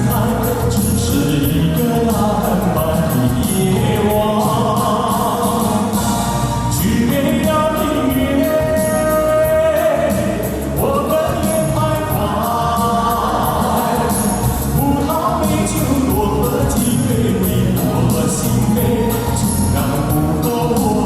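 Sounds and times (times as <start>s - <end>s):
instrumental accompaniment: 0.0s - 21.0s
voices singing long notes: 12.0s - 16.0s.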